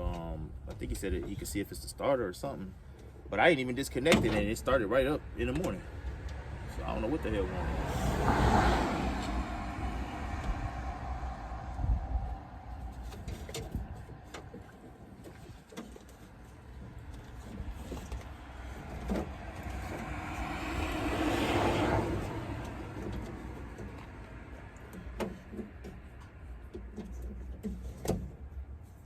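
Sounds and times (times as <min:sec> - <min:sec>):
car passing by: 0:05.9 - 0:14.5, 0:17.7 - 0:25.5
low rumble: 0:07.5 - 0:14.8.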